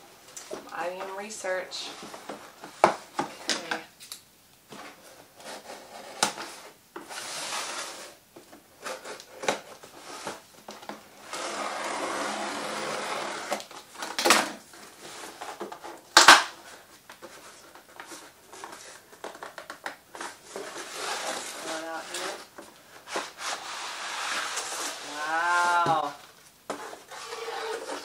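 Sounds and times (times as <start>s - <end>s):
cardboard rubbing: 11.2s - 13.7s, 16.6s - 28.0s.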